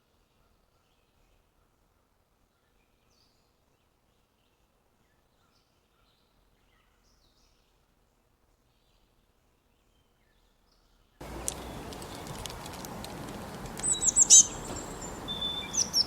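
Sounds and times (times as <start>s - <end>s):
faint bird chirps: 11.2s - 16.0s
low hiss: 11.2s - 16.0s.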